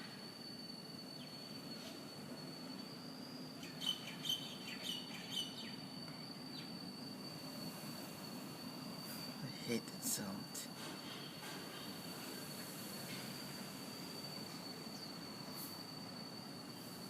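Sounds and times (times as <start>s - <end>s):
high-pitched whirring whine: 0.0s - 17.0s
low background hum: 0.0s - 17.0s
birds chirping: 3.6s - 5.8s.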